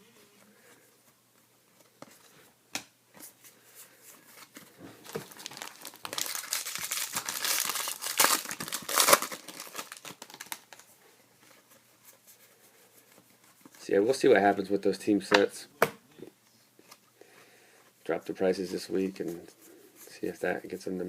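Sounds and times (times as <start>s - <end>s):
plastic foil wrapper crinkling: 5.0s - 10.9s.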